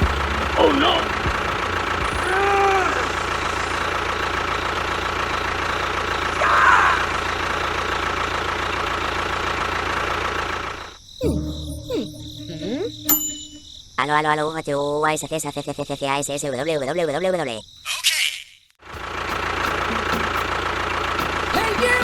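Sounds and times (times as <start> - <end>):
small motor droning: 0.0 - 6.4
gliding voice-like sounds: 11.2 - 13.1.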